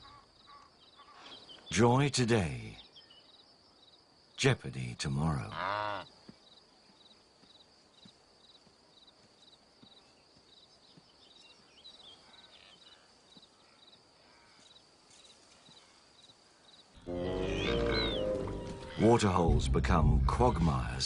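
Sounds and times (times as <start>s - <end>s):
faint bird chirps: 0.0s - 4.1s, 6.1s - 19.1s
insects trilling: 0.0s - 19.5s
cricket chirping in pulses: 2.4s - 19.0s.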